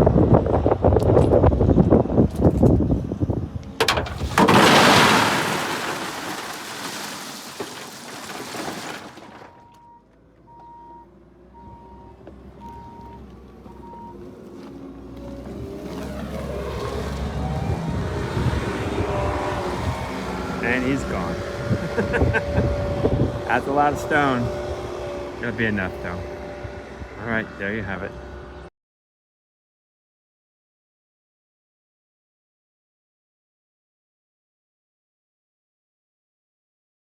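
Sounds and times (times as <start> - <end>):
loader engine: 0.1 - 28.7
gravel pouring from bucket: 4.0 - 9.5
backup alarm beeping: 9.5 - 14.2.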